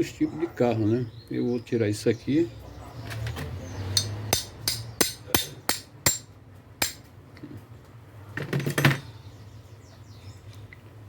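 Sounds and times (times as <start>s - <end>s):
hammer tapping on metal: 3.9s - 7.1s.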